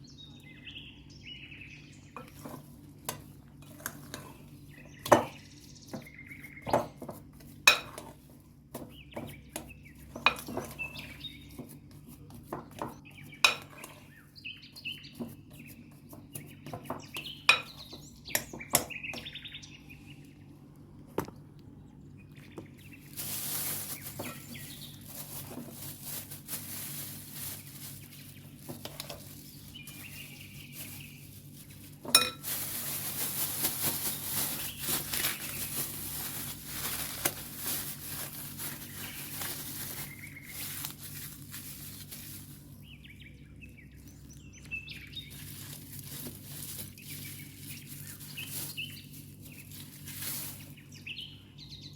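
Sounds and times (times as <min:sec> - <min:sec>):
metal utensil clinking on a pan: 0:32.1 - 0:32.4.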